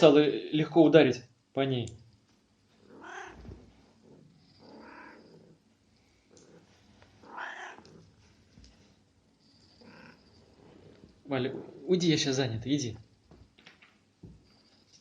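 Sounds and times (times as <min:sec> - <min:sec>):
cat meowing: 0:02.8 - 0:03.6, 0:04.6 - 0:05.4, 0:07.2 - 0:08.0, 0:09.8 - 0:10.2.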